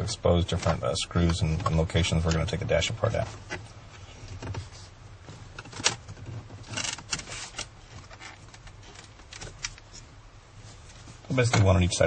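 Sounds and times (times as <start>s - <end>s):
plastic scraping rub: 4.4s - 10.0s.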